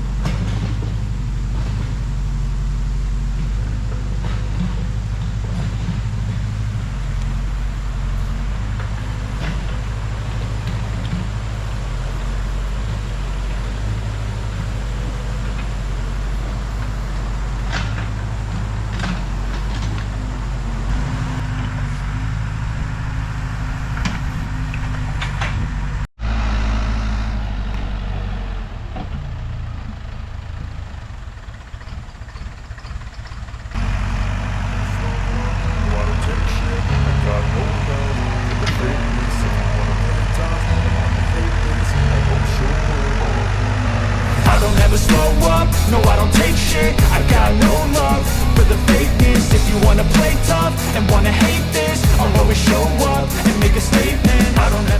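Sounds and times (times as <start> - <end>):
diesel engine running: 0.0 - 54.9
sharp machine knocks: 44.3 - 54.9.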